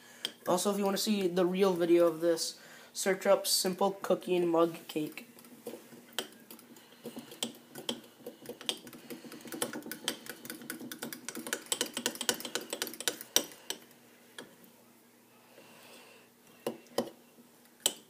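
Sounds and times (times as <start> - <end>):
utensil stirring batter in a mug: 4.8 - 14.6, 16.5 - 17.2.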